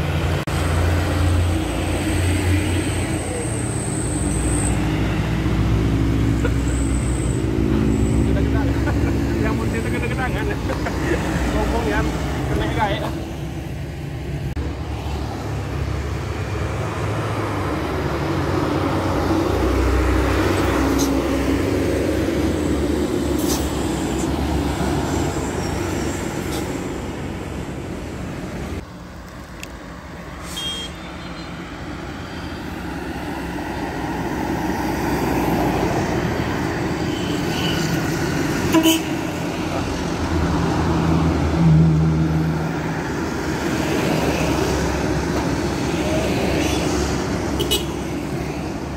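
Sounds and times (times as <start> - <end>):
buses and trucks passing: 0.0 - 48.9
vehicle horn: 30.5 - 31.5, 37.1 - 37.9, 38.7 - 39.2, 47.6 - 48.0.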